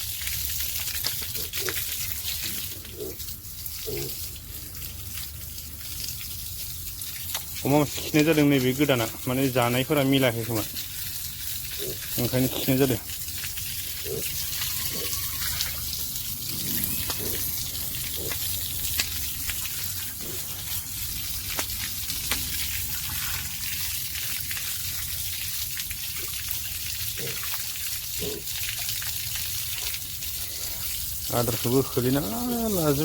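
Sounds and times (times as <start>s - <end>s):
running water hiss: 0.0s - 33.0s.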